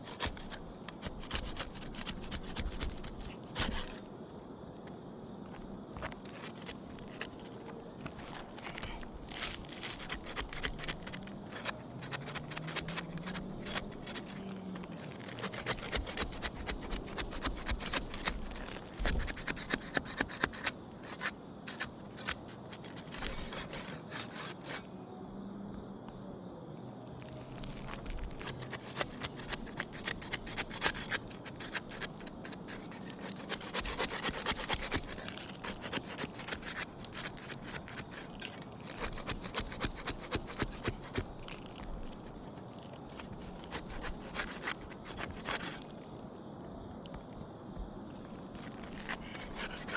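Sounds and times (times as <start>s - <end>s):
putty knife scraping shingles: 0.0s - 4.1s, 6.0s - 24.9s, 28.4s - 45.9s, 48.6s - 49.9s.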